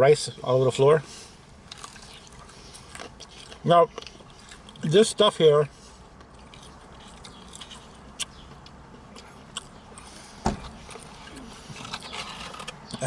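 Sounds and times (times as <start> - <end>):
chewing breaded chicken: 1.6 - 5.2, 6.2 - 10.2
dull thump: 10.4 - 10.8.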